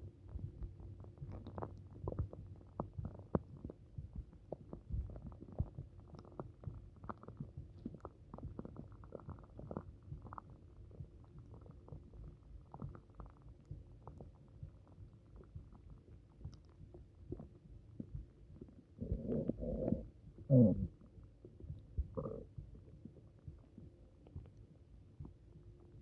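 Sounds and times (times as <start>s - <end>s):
stomach gurgling and rumbling: 0.0s - 26.0s.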